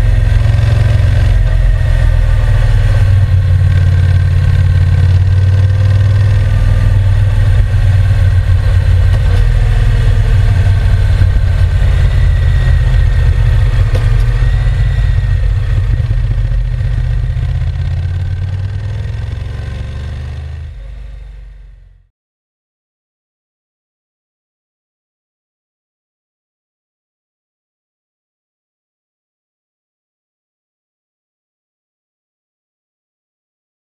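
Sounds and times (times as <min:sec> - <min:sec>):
motorcycle engine running: 0:00.0 - 0:22.1.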